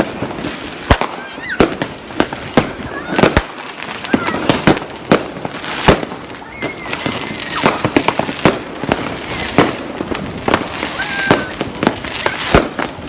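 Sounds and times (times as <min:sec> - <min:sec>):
firecracker and shell bangs: 0:00.0 - 0:13.0
whistling fireworks: 0:00.0 - 0:13.0.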